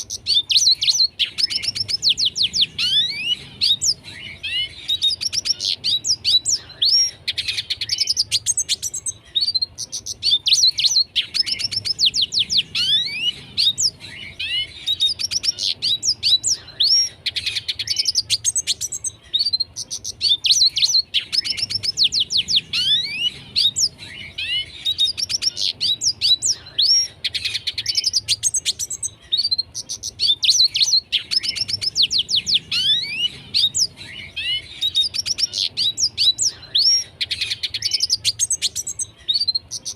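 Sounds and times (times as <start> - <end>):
bird singing trills: 0.0 - 39.9.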